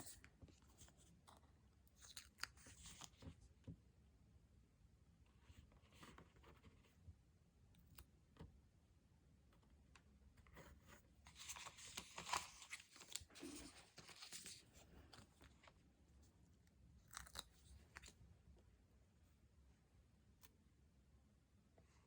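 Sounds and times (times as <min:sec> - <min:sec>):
paper tearing and rustling: 0:11.3 - 0:14.6.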